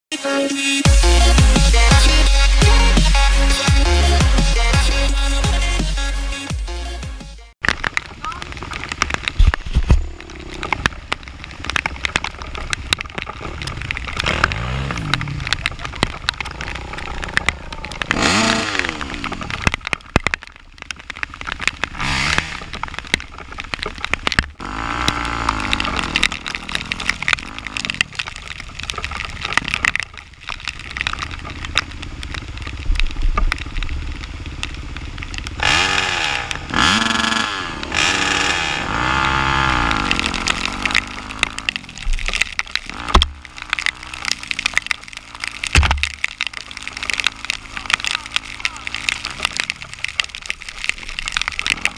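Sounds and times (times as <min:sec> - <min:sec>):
off-road engine revving: 0:00.9 - 0:20.1, 0:20.7 - 0:30.0, 0:30.6 - 0:51.9
clicks and knocks: 0:07.6 - 0:33.9, 0:40.0 - 0:51.9.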